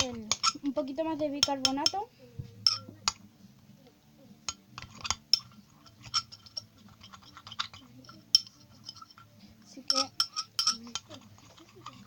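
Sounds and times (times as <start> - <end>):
spoon scraping a bowl: 0.0 - 0.8, 4.5 - 12.0.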